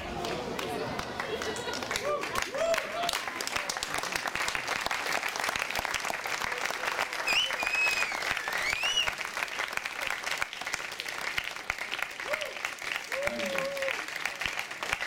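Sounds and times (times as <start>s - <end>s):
audience applauding: 0.0s - 15.0s
long whistle: 7.3s - 9.2s.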